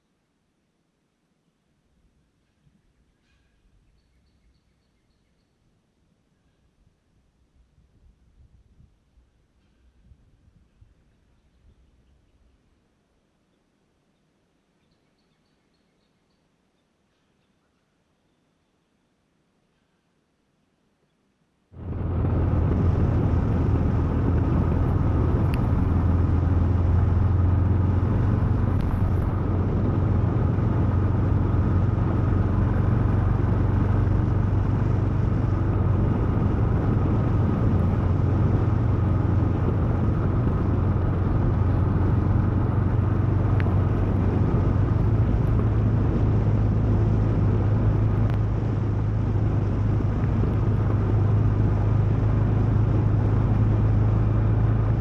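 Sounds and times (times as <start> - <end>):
road and wind noise: 6.8 - 12.9, 21.7 - 55.0
motorcycle engine running: 21.8 - 55.0.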